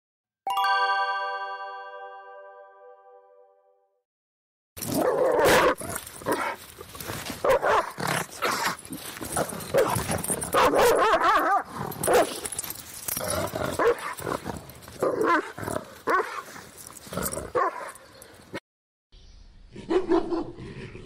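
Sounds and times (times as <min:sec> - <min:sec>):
dog barking and snarling: 0:04.8 - 0:18.2, 0:19.8 - 0:21.0.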